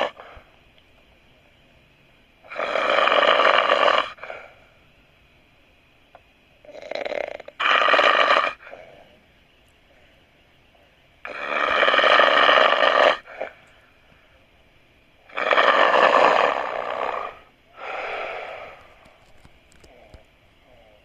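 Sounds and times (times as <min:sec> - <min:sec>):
person snoring loudly: 0:02.5 - 0:04.3, 0:11.3 - 0:13.5, 0:15.3 - 0:18.8.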